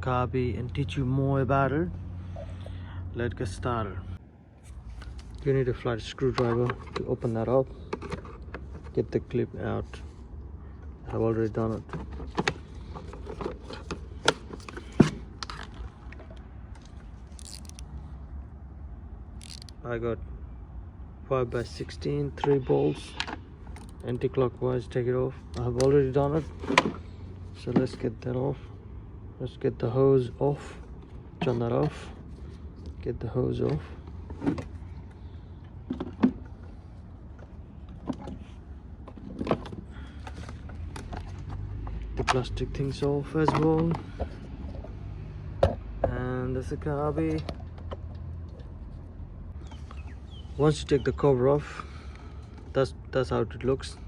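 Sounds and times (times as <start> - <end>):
metal and plastic parts scraping: 4.6 - 10.1, 10.8 - 18.2, 19.4 - 19.8, 21.6 - 24.4, 25.4 - 28.2, 30.8 - 45.8.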